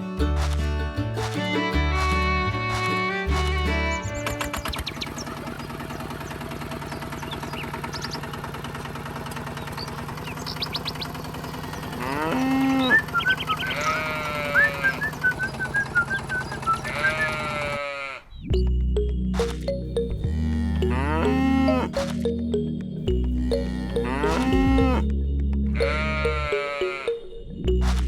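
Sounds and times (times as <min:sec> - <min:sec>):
livestock calling: 0:11.6 - 0:18.3, 0:20.3 - 0:22.0, 0:23.2 - 0:25.0, 0:25.8 - 0:27.2.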